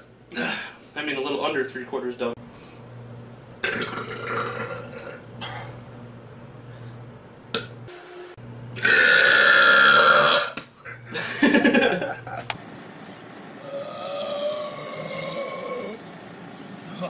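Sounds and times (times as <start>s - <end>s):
man belching: 3.6s - 5.2s, 8.8s - 10.6s, 13.6s - 16.0s.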